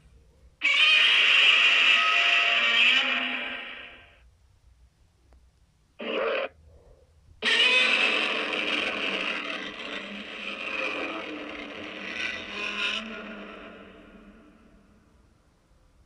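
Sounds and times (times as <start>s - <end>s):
monster roar: 0.6s - 4.0s, 7.4s - 14.7s.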